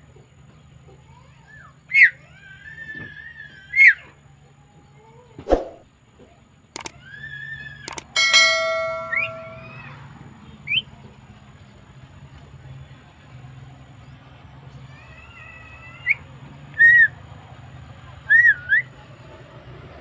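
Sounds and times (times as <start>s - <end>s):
sharp clicks: 6.8s - 7.0s, 7.9s - 8.2s
ringing bell-like ding: 7.9s - 10.0s
myna bird whistling: 18.3s - 18.9s.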